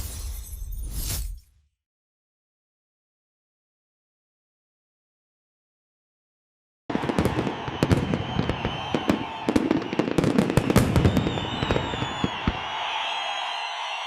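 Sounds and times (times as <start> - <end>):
fireworks bangs and crackles: 6.9 - 13.9.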